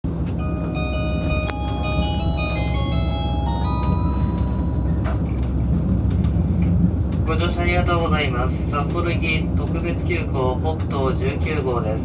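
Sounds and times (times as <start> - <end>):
diesel train rumble: 0.0 - 12.0
electronic bell-like chime melody: 0.4 - 5.2.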